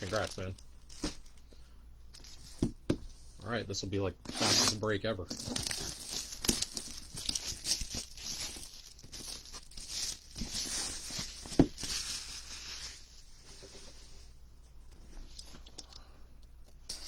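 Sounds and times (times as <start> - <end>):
plastic wrapping tearing and crinkling: 0.0 - 1.4, 4.3 - 12.8.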